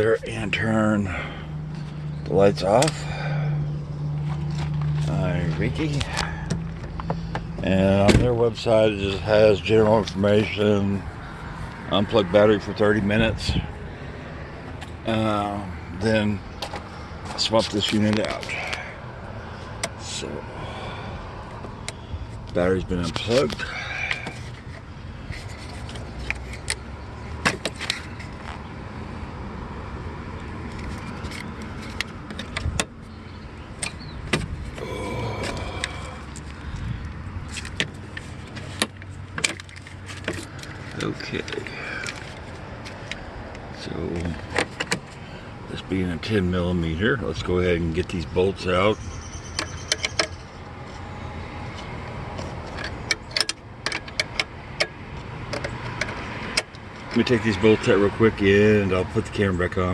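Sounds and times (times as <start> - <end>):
sharp clicks and knocks: 37.5 - 43.6, 51.7 - 57.2.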